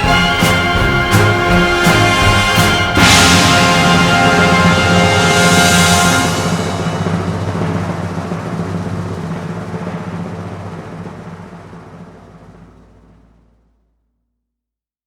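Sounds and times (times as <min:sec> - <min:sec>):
soundtrack music: 0:00.0 - 0:07.7
ringing drum hit: 0:00.0 - 0:08.4.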